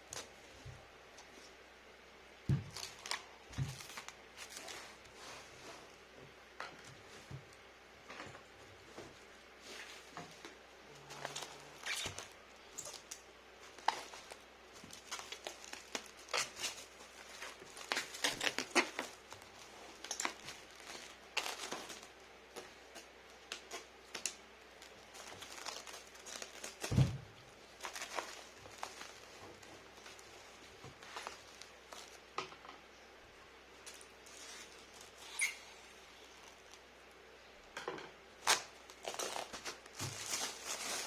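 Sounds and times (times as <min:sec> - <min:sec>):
plastic and paper crinkling: 0:02.5 - 0:06.0, 0:06.7 - 0:32.3, 0:33.8 - 0:35.5, 0:36.2 - 0:37.1, 0:38.4 - 0:41.0.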